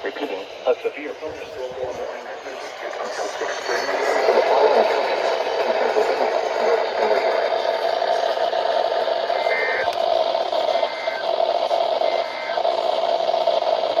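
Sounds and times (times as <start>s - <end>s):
steady radio hiss: 0.0s - 14.0s
buzzy two-tone digital bursts: 9.3s - 10.0s, 10.6s - 13.0s.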